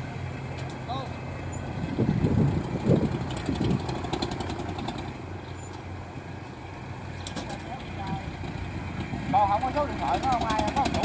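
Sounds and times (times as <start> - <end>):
machine engine running: 9.6 - 11.0.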